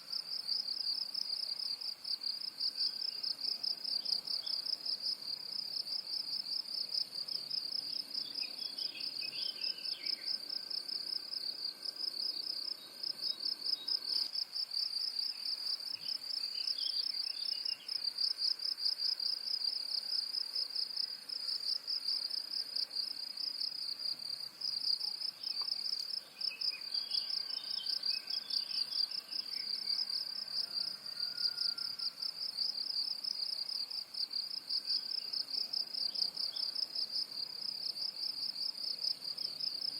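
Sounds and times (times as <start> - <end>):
insects trilling: 0.0 - 39.9.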